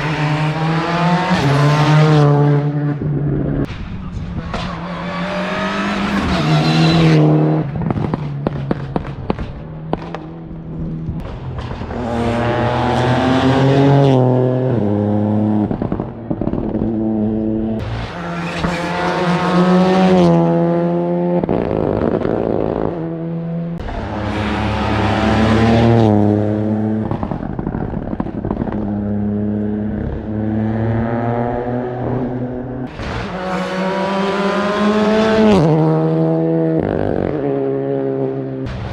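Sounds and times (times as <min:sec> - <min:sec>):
rally car engine revving: 0:00.0 - 0:38.9.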